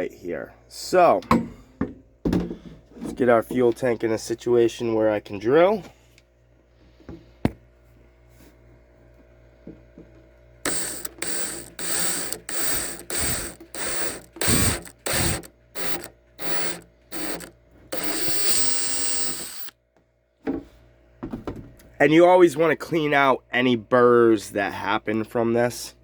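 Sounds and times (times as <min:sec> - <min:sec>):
electric drill cutting metal: 0:10.7 - 0:19.7.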